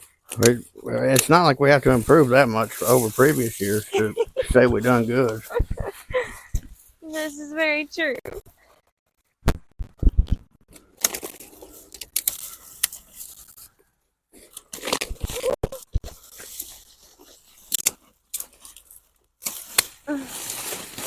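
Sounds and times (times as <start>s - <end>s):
soil and plants rustling: 0.0s - 8.1s, 14.4s - 21.0s.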